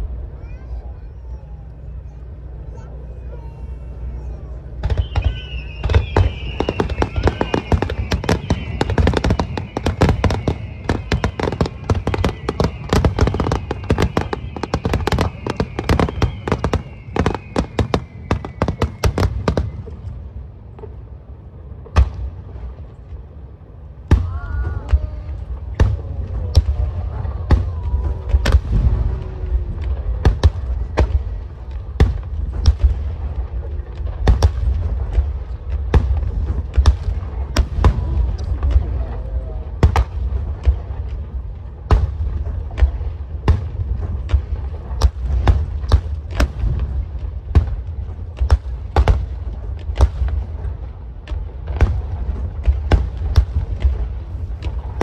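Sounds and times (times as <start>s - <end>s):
falling firework whistles: 0.4s - 20.5s, 24.1s - 41.2s.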